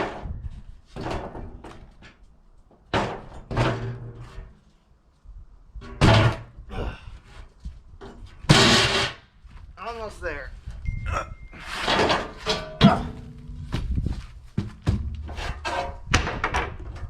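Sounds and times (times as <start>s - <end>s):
metal clanks and bangs: 2.9s - 4.6s, 5.8s - 6.6s, 8.1s - 9.2s, 11.5s - 13.8s, 14.6s - 17.0s.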